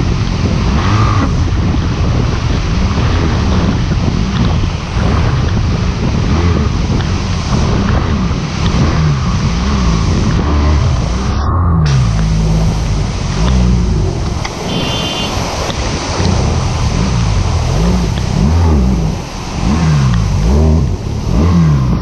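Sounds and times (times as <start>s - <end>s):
motorcycle engine revving: 0.0s - 22.0s
steady rushing noise: 0.0s - 22.0s.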